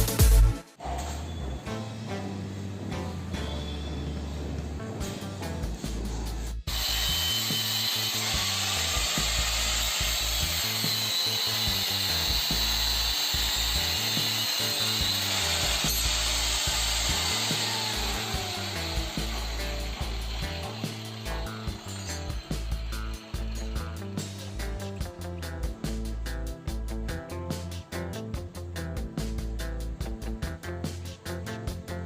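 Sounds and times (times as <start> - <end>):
background music: 0.0 - 6.8, 7.5 - 32.0
power tool running with hiss: 3.9 - 28.2.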